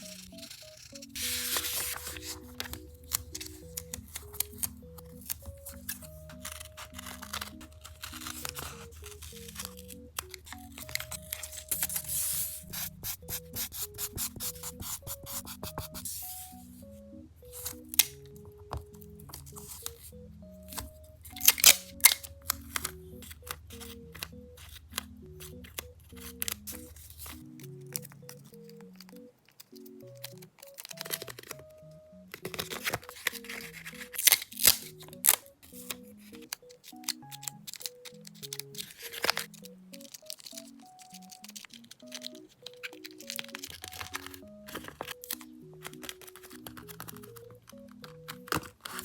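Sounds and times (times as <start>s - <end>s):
paper rubbing and rustling: 0.0s - 16.8s, 32.4s - 49.0s
soft background music: 0.0s - 49.0s.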